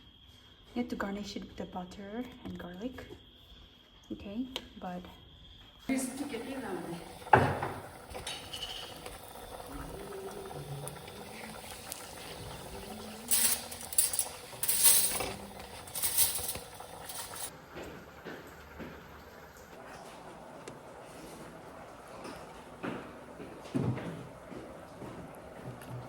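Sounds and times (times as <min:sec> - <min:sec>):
utensil scraping and brushing: 0:13.3 - 0:17.5.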